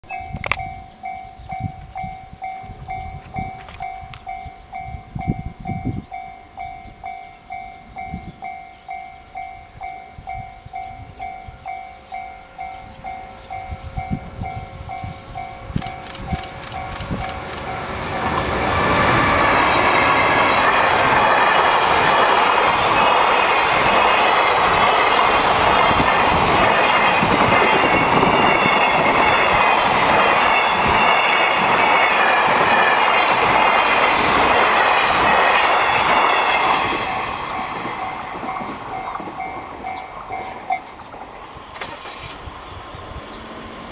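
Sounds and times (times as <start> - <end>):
level crossing warning bell: 0.1 - 18.6, 19.2 - 41.2
train wheels rushing on rails: 13.5 - 43.9
wheels clacking over rail joints: 15.8 - 42.0.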